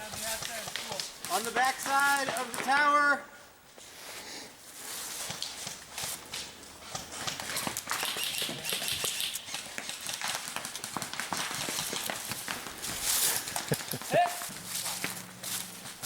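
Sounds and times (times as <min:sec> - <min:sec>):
footsteps running on ground: 0:05.2 - 0:16.0.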